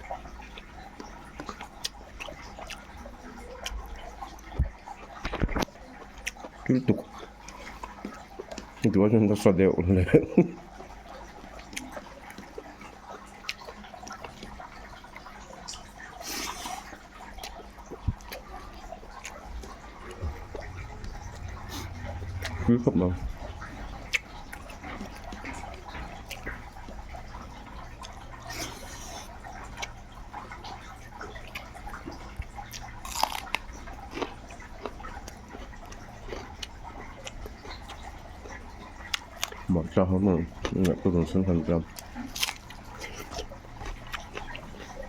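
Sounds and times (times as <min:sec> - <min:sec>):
chewing mouth clicks: 0:00.5 - 0:02.9, 0:13.4 - 0:39.7, 0:41.9 - 0:45.0
low hum: 0:19.3 - 0:26.2.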